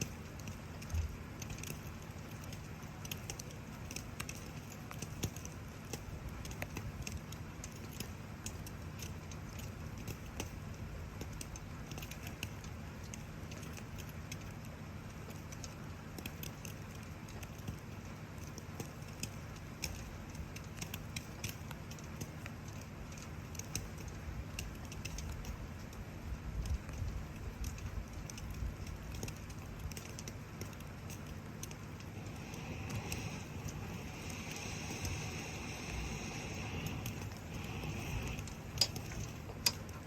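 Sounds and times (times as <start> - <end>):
campfire crackling and popping: 0.0 - 40.0
rain hissing: 29.1 - 40.0
bright hiss: 31.8 - 40.0
low rumble: 31.8 - 40.0.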